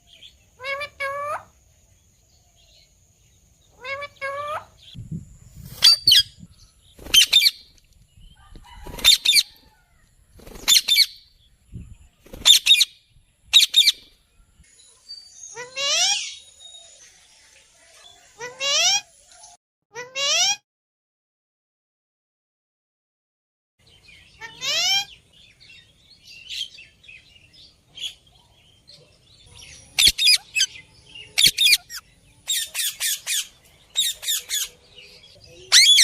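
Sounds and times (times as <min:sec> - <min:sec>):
parrot squawking and screeching: 0:00.6 - 0:01.5, 0:03.8 - 0:04.9, 0:05.8 - 0:06.3, 0:07.1 - 0:07.6, 0:08.7 - 0:09.7, 0:10.6 - 0:11.2, 0:12.4 - 0:12.9, 0:13.5 - 0:14.0, 0:15.5 - 0:16.4, 0:18.4 - 0:19.1, 0:20.0 - 0:20.6, 0:24.4 - 0:25.2, 0:30.0 - 0:30.7, 0:31.4 - 0:34.7, 0:35.7 - 0:36.0.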